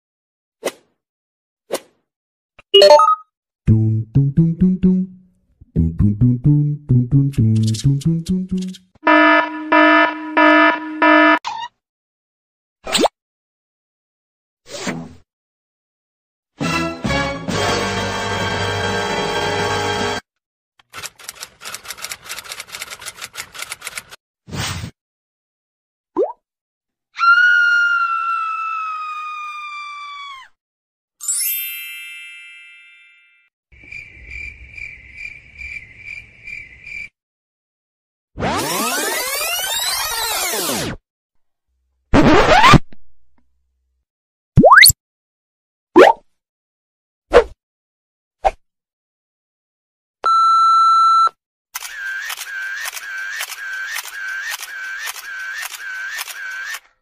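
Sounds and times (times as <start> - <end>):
steady electronic beep: 2.8 - 3.2, 9.1 - 11.4
bell-like ding: 31.4 - 33.5.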